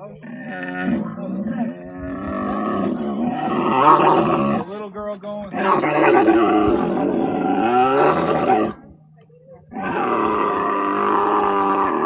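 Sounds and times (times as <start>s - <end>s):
animal calling loudly: 5.6s - 8.8s.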